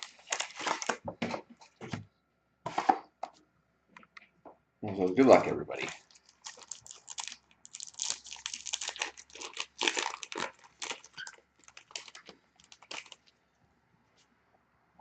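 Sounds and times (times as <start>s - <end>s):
plastic wrapping crinkling: 0.0s - 1.9s, 5.8s - 13.4s.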